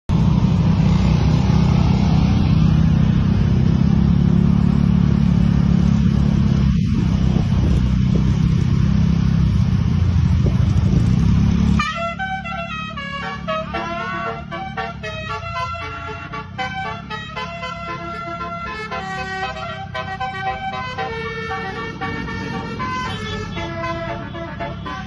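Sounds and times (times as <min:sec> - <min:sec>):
vehicle engine rumble: 0:00.0 - 0:25.0
multi-tone horn playing notes: 0:11.8 - 0:25.0.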